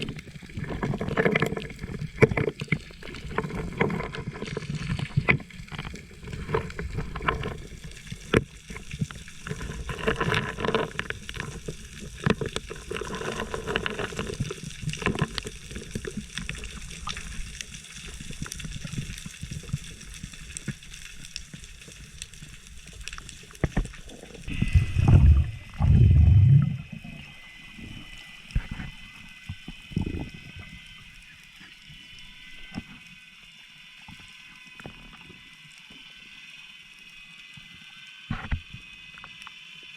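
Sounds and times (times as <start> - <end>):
water sloshing and gurgling: 0.0 - 21.1, 22.8 - 31.0
low muffled bursts: 24.5 - 27.0.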